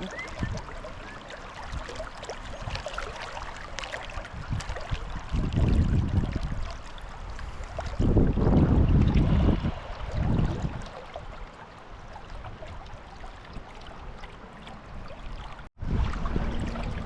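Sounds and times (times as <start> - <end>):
small splashes and clicks: 0.0 - 8.2, 10.8 - 15.7
shallow river water running: 0.0 - 17.0
wind buffeting microphone: 0.0 - 17.0.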